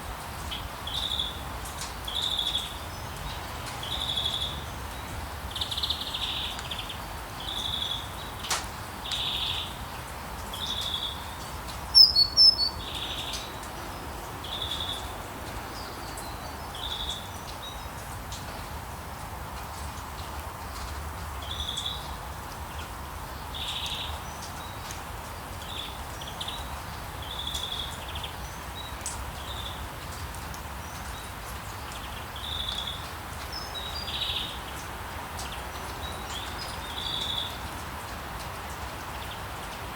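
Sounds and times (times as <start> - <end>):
rain hiss: 0.0 - 39.9
town ambience: 8.3 - 21.4
birds chirping: 10.6 - 17.2.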